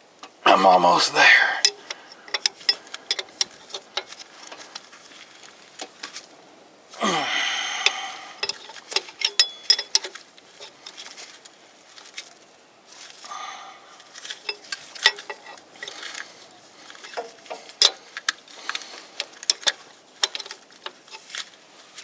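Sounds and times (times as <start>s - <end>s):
hand tools clinking on metal: 1.2s - 4.7s, 7.7s - 11.0s, 14.1s - 18.8s, 19.4s - 21.3s
short falling vocal sound: 7.0s - 8.4s.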